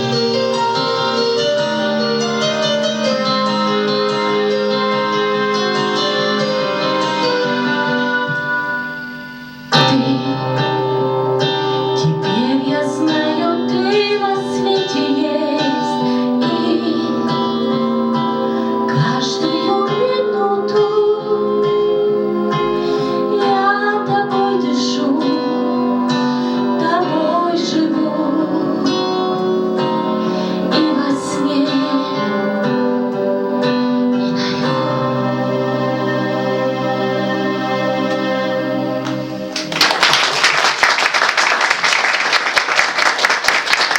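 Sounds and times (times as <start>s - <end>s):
sustained keyboard chords: 0.0s - 40.1s.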